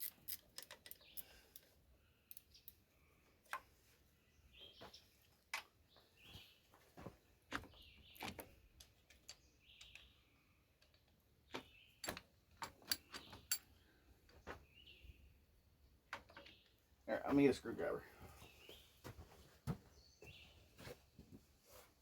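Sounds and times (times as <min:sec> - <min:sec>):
birds chirping: 0:00.8 - 0:21.0.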